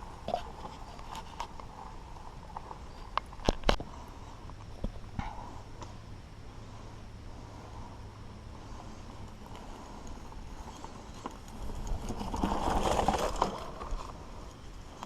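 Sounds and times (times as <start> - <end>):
bike clattering and rattling: 9.3 - 15.0.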